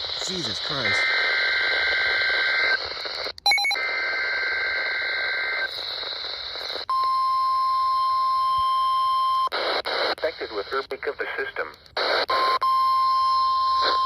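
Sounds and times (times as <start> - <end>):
steady radio alert tone: 0.0 - 2.6
radio signal hiss: 0.0 - 3.3, 4.0 - 6.9, 9.6 - 12.5.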